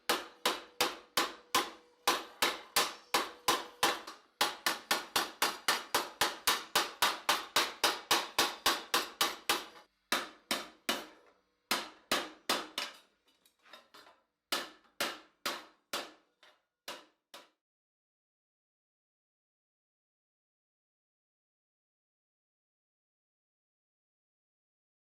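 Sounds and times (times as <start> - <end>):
hammer striking steel plate: 0.0 - 13.1, 14.5 - 17.6.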